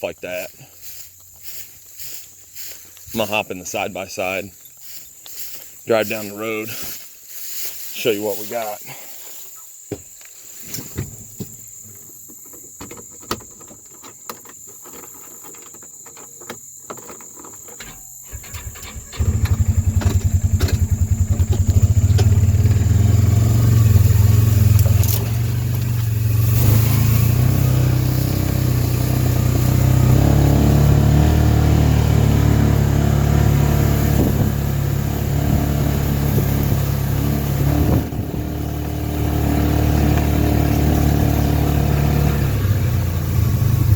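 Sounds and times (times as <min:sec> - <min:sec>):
utility vehicle engine running: 0:18.3 - 0:43.9.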